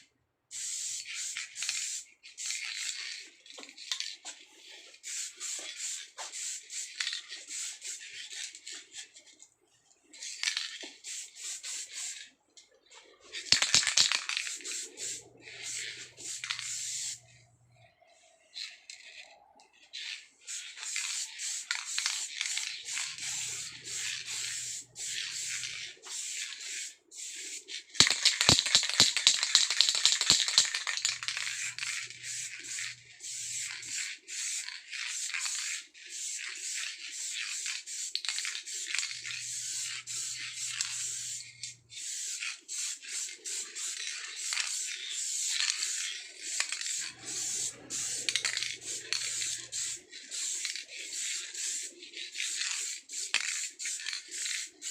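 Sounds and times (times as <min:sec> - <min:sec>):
spray can hissing: 0:00.5 - 0:03.2, 0:04.5 - 0:09.0, 0:10.2 - 0:12.2, 0:13.3 - 0:17.4, 0:20.0 - 0:54.9
rapid clicking and rattling: 0:13.4 - 0:14.6, 0:28.0 - 0:32.0.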